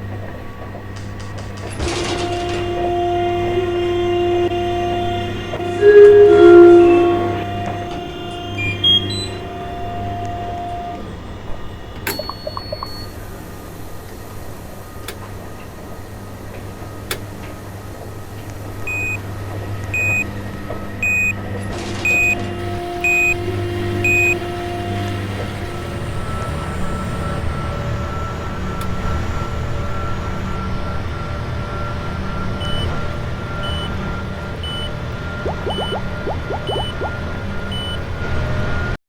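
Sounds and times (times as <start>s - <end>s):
washing machine beeps: 5.7s - 11.0s, 12.1s - 13.2s, 18.9s - 19.2s, 19.9s - 20.3s, 21.0s - 21.4s, 22.0s - 25.2s, 32.6s - 33.0s, 33.6s - 34.0s, 34.6s - 38.1s.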